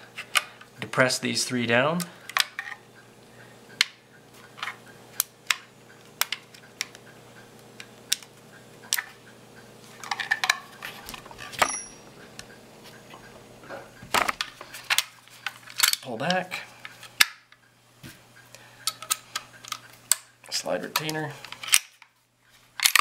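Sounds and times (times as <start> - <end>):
pistol slide clicking and clinking: 22.8 - 23.0.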